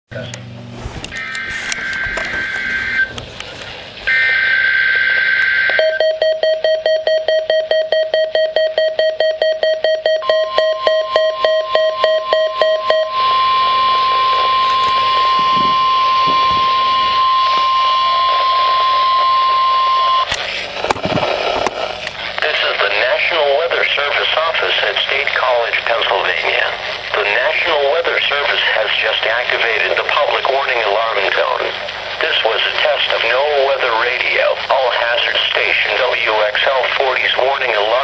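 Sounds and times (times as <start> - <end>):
steady warning alarm tone: 1.1 - 3.2, 4.0 - 20.4
rapid pulsed beeping: 4.1 - 20.3
buzzy data bursts: 11.9 - 22.4.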